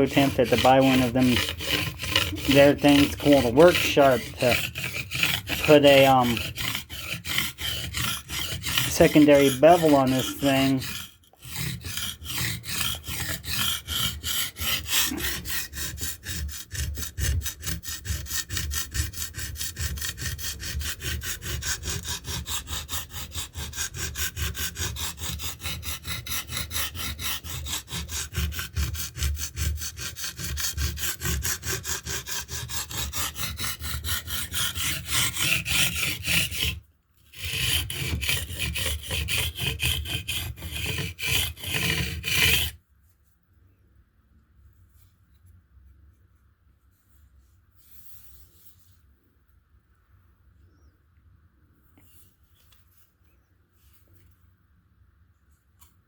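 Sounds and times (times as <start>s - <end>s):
blade rasping on sharpening stone: 0.0s - 36.8s, 37.4s - 42.8s.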